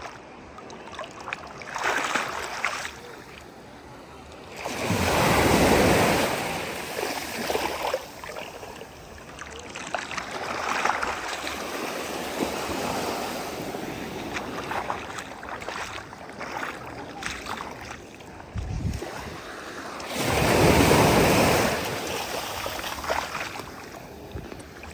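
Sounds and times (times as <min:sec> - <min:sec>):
waves breaking on shore: 0:00.8 - 0:24.9.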